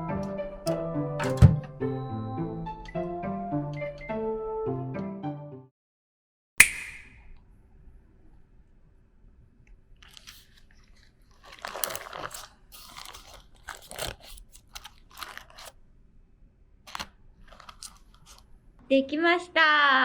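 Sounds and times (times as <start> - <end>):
parchment paper crinkling: 10.0 - 15.8, 16.9 - 18.5.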